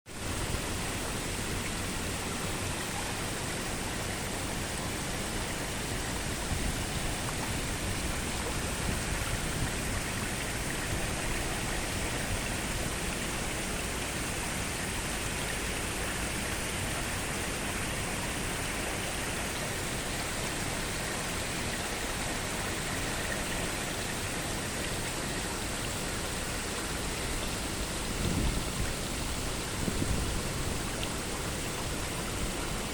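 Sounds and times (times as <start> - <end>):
rushing water: 0.1 - 32.9.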